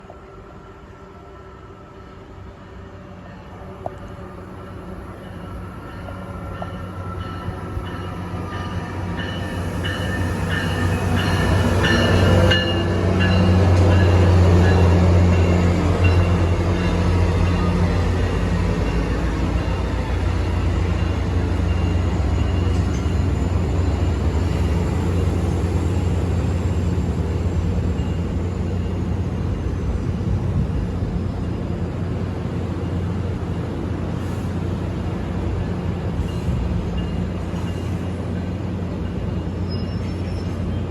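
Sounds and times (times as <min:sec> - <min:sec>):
train rolling rumble: 0:02.7 - 0:40.9
high brake squeal: 0:39.6 - 0:40.8.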